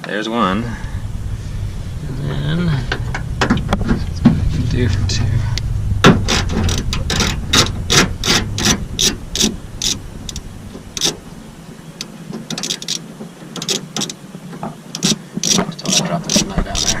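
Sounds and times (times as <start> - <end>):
ratchet wrench clicking: 12.5 - 13.0, 13.6 - 14.2, 14.9 - 17.0.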